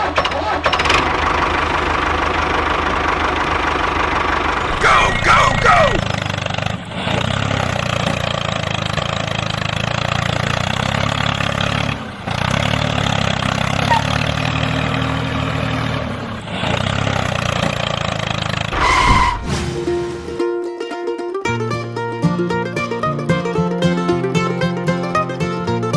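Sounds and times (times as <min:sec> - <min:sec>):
small tractor engine running: 0:00.0 - 0:18.7.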